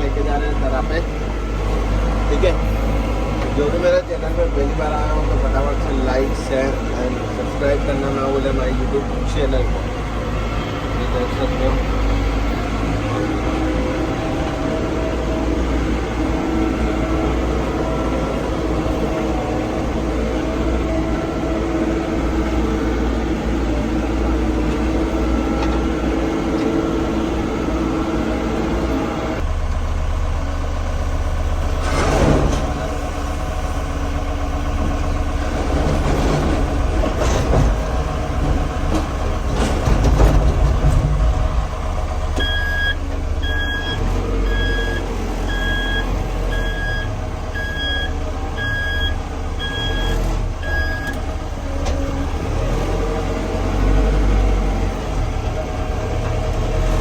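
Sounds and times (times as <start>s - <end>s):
diesel engine running: 0.0s - 57.0s
reversing alarm beeping: 42.4s - 51.2s.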